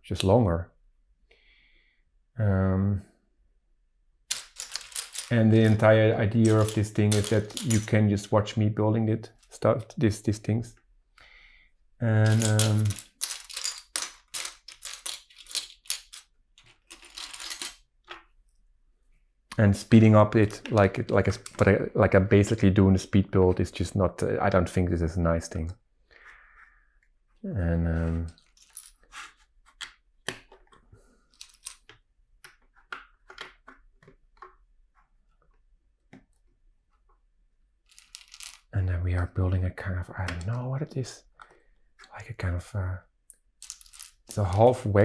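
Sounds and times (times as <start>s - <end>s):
plastic bricks clicking and rattling: 4.3s - 7.9s, 12.2s - 18.2s, 20.4s - 21.7s, 29.7s - 34.6s, 37.9s - 38.7s, 43.6s - 44.8s.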